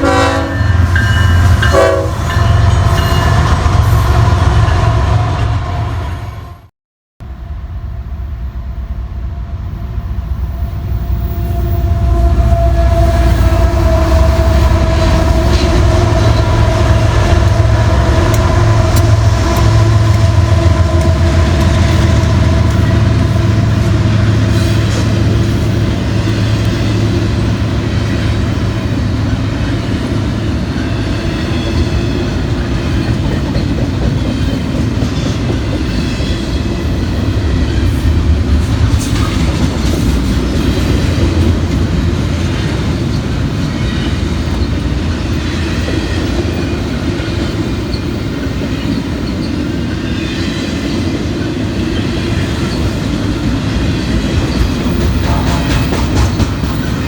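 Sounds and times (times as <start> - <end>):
diesel locomotive engines droning: 0.0 - 57.0
train wheels clattering over rail joints: 51.9 - 57.0.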